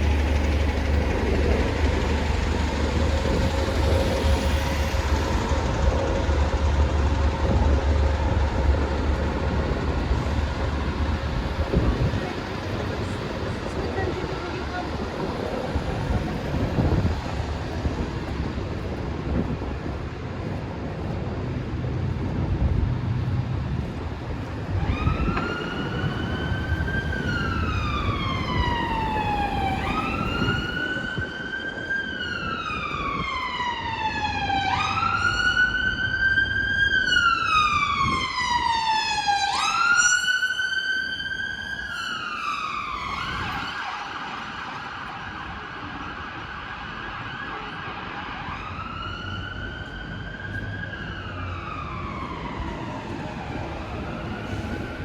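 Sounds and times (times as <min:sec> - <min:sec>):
emergency siren wailing: 0:00.0 - 0:21.1, 0:23.8 - 0:55.0
city traffic noise: 0:00.0 - 0:55.0.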